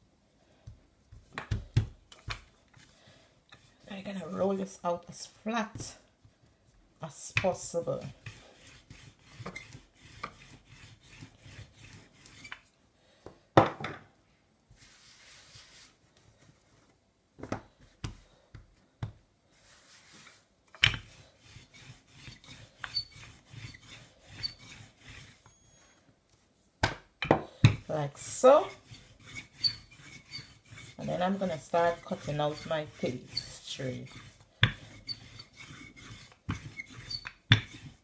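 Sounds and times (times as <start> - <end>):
rolling pin rolling dough: 3.6 - 6.5, 7.1 - 12.7, 17.8 - 25.9, 26.8 - 38.0.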